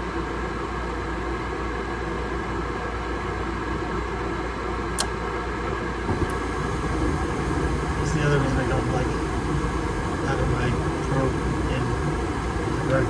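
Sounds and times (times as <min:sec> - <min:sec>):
constant low hum: 0:05.9 - 0:13.0
furnace burners and fans rushing: 0:05.9 - 0:13.0.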